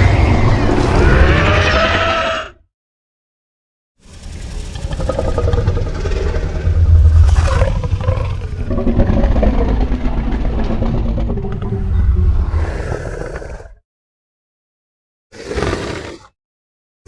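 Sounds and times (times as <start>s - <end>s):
deep growling creature call: 0.0s - 2.7s, 4.1s - 13.8s.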